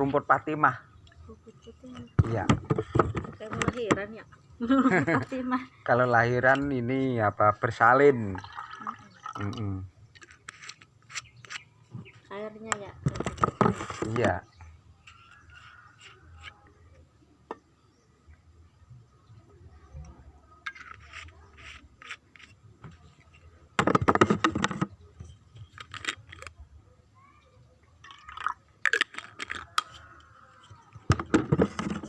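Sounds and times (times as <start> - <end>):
water pouring: 8.2 - 9.7, 28.0 - 29.4
handling clicks and knocks: 20.6 - 26.6, 28.9 - 32.0.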